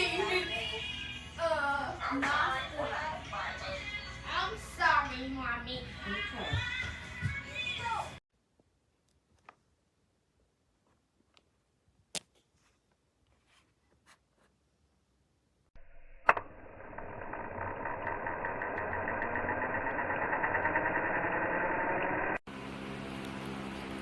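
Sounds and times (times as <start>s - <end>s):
small electric motor whining: 15.8s - 22.4s.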